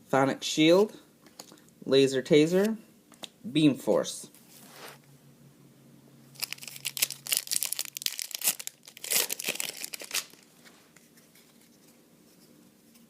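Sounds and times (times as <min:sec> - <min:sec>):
card pack wrapper tearing: 0:06.4 - 0:10.5.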